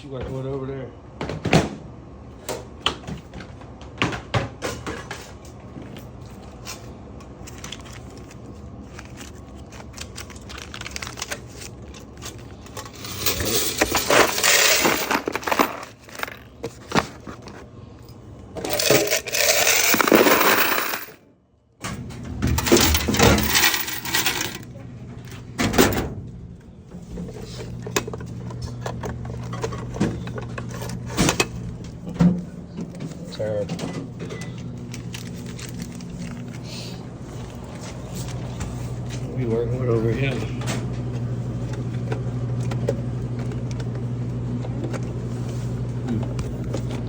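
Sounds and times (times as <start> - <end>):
coins clinking: 9.0 - 16.5, 18.6 - 21.2, 22.4 - 24.7.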